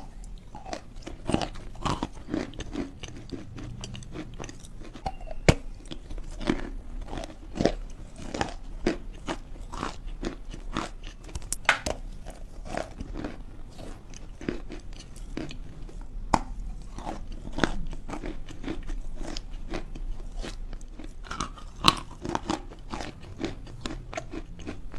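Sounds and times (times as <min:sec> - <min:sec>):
chalk being chewed: 0:00.0 - 0:24.9.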